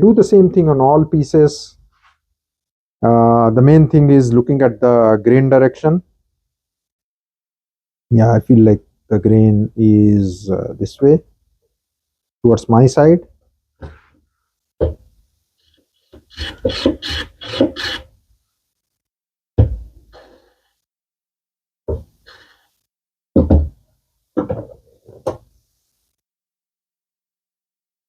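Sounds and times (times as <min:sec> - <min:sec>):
dull wooden knocks: 0:24.4 - 0:25.5.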